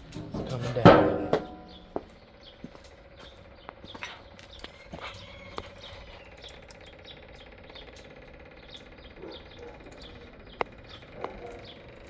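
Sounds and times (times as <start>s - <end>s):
steady hum: 0.0s - 9.1s
small bird chirping: 1.6s - 12.0s.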